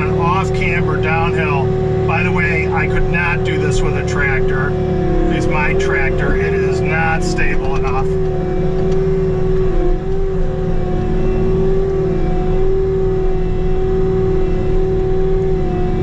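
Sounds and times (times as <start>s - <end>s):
hydraulic whine: 0.0s - 16.0s
loader diesel engine rumble: 0.0s - 16.0s.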